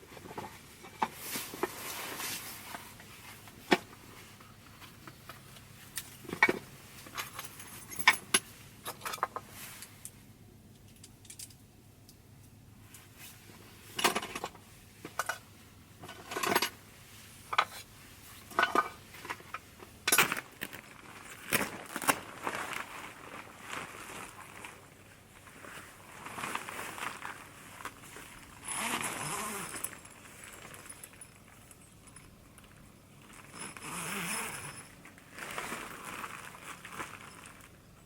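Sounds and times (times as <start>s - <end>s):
small metal objects clinking: 28.5s - 37.8s.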